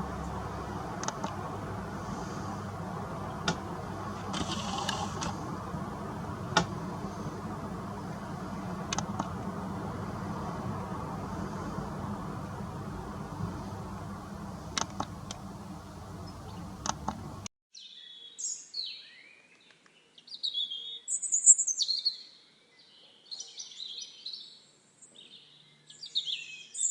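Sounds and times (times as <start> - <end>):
outdoor background noise: 0.0 - 26.9
songbirds chirping: 0.0 - 26.9
sharp clicks: 1.0 - 1.4, 3.4 - 3.7, 4.3 - 5.4, 8.9 - 9.5, 14.7 - 15.4, 16.8 - 17.3.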